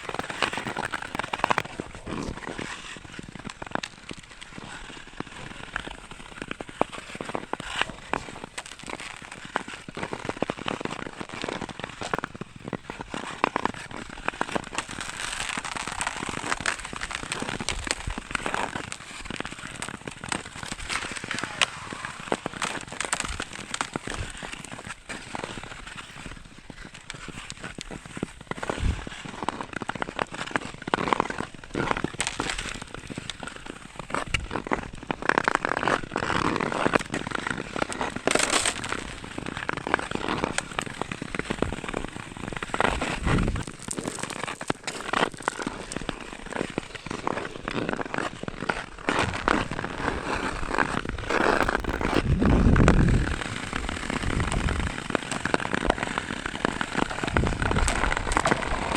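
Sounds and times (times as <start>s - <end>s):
ice cracking and snapping: 0.0s - 58.9s
ice skate blades scraping: 0.0s - 58.9s.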